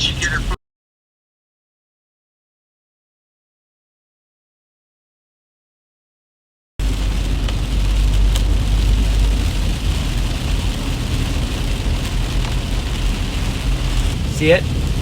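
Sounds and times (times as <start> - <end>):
road and engine rumble: 0.0 - 0.6, 6.8 - 15.0
rain hissing on car: 6.8 - 15.0.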